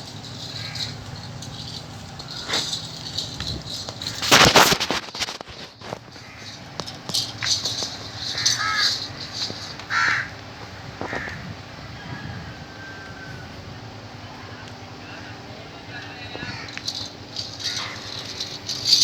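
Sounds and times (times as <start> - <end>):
loud rattling noise: 0.0 - 10.4, 16.4 - 19.0
harsh animal calls: 8.3 - 9.1, 9.9 - 10.4.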